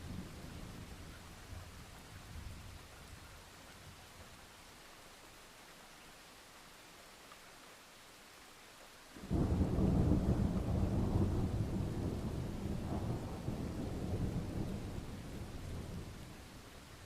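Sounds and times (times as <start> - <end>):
faint rain hiss: 0.0 - 17.0
thunder rumble: 9.2 - 16.4.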